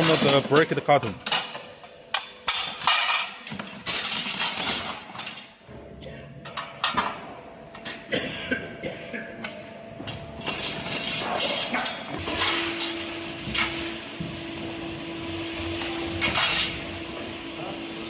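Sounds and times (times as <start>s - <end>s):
metal parts clinking: 10.4s - 13.0s.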